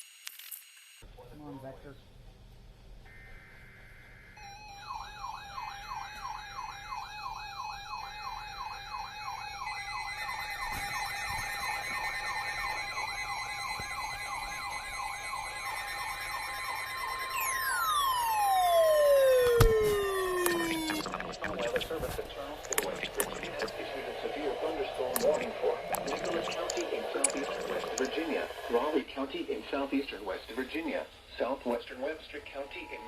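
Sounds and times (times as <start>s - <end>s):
siren yelping: 4.4s - 21.9s
tone sliding down in pitch: 15.2s - 21.7s
steady tone: 17.4s - 28.8s.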